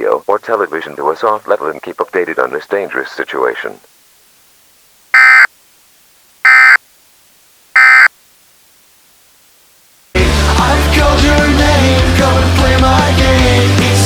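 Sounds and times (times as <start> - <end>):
digital data tone squawks: 5.2 - 5.5, 6.5 - 6.8, 7.8 - 8.1
loud rock music: 10.2 - 14.0.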